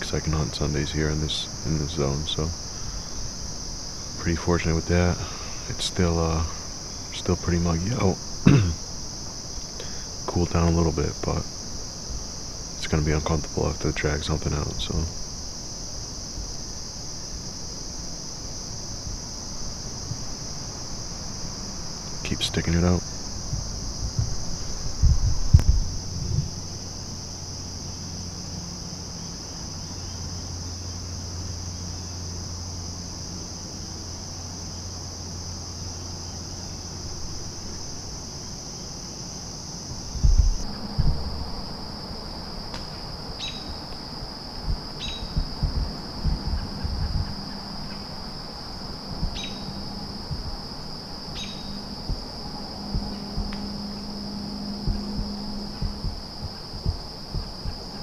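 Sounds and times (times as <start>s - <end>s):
crickets chirping: 0.0s - 58.0s
low thumps: 23.4s - 26.6s, 40.1s - 43.2s, 44.6s - 48.1s, 48.7s - 58.0s
bird chirps: 49.3s - 49.8s, 51.4s - 51.8s.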